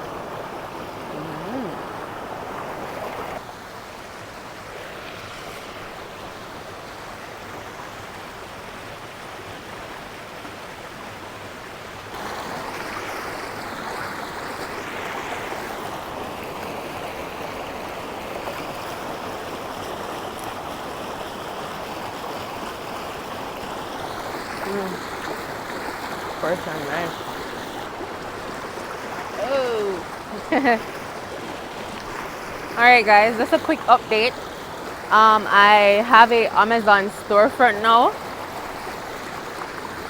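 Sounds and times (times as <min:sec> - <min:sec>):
river water rushing: 0:00.0 - 0:40.0.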